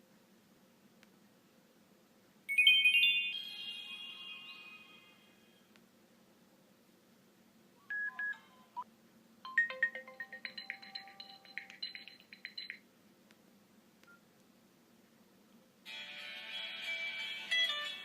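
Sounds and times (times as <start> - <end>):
phone ringtone: 2.5 - 5.4, 9.5 - 12.8, 15.9 - 18.0.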